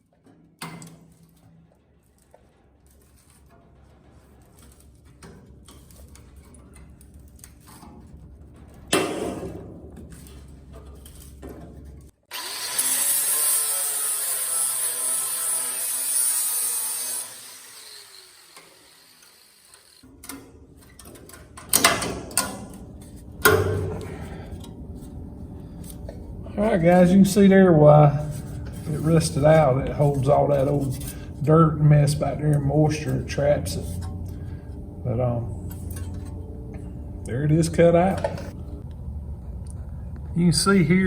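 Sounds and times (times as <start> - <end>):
metal clanks: 0.0 - 12.2, 20.1 - 25.1
cut-off tool slicing steel: 12.3 - 20.0.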